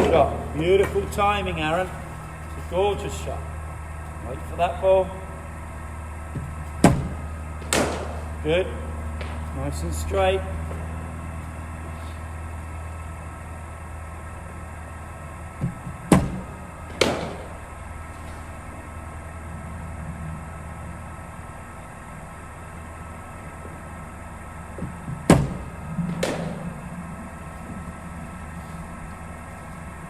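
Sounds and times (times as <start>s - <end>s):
bowling machine humming: 0.0s - 30.0s
ball leaving machine knock: 6.3s - 8.4s, 15.6s - 17.7s, 24.7s - 27.0s
bat striking ball: 6.3s - 8.4s, 15.6s - 17.8s, 24.7s - 27.1s.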